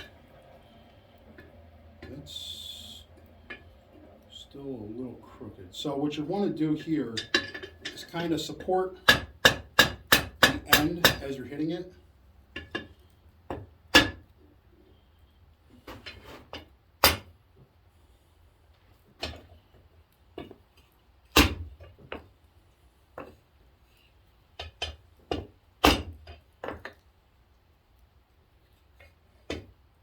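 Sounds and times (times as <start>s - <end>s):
wooden mallet striking steel: 9.0s - 11.4s.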